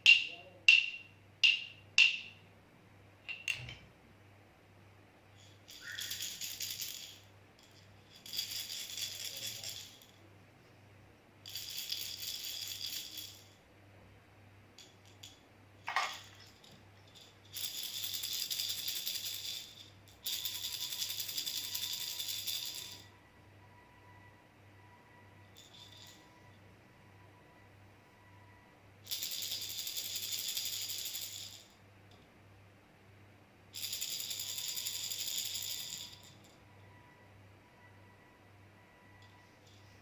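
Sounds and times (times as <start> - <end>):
baby rattle shaking: 5.4 - 10.1, 11.5 - 13.5, 16.0 - 23.0, 29.1 - 31.7, 33.8 - 36.4.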